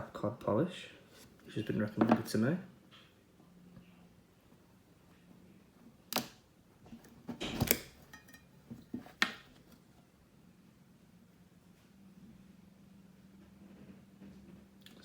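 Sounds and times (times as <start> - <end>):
handling clicks and knocks: 1.9 - 2.4, 6.9 - 9.6.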